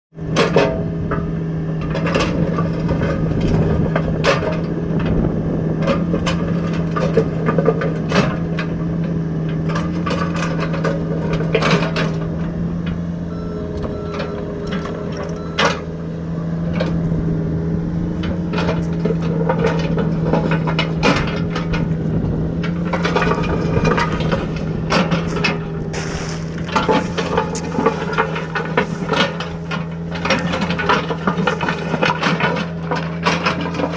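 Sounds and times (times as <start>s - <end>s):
excavator engine running: 0.2s - 33.9s
knocks clanks and scraping: 0.3s - 17.3s, 17.9s - 33.9s.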